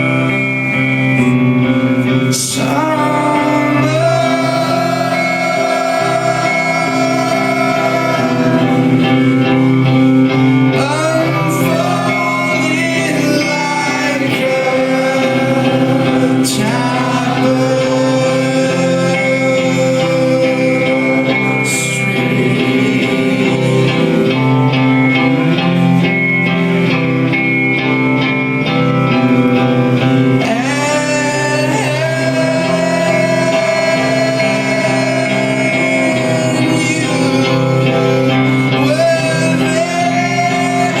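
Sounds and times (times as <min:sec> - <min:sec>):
man singing: 0:00.0 - 0:27.3, 0:28.2 - 0:41.0
electric guitars: 0:00.0 - 0:41.0
rock band playing: 0:00.0 - 0:41.0.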